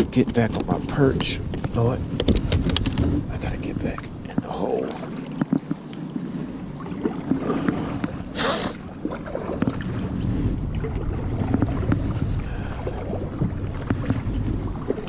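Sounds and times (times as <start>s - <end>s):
knocks against the hull: 0.0s - 3.2s, 11.4s - 12.2s, 13.4s - 15.0s
wind on microphone: 0.0s - 15.0s
paddle strokes swishing in water: 4.3s - 15.0s.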